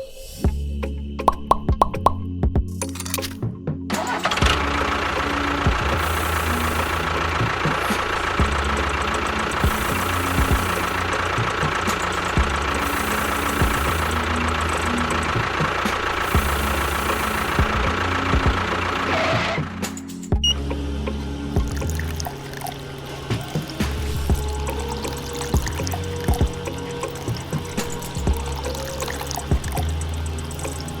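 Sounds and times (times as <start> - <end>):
small motor whining and rattling: 4.0 - 31.0.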